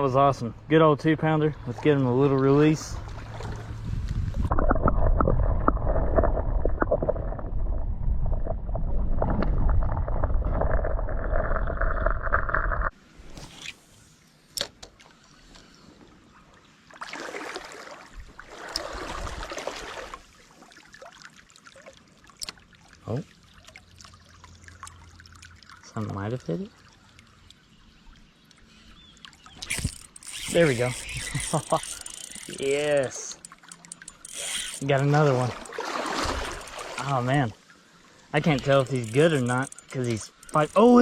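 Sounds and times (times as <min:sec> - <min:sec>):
faint stream noise: 0:00.0 - 0:03.9, 0:10.4 - 0:41.0
muffled water gurgling and sloshing: 0:01.3 - 0:13.0.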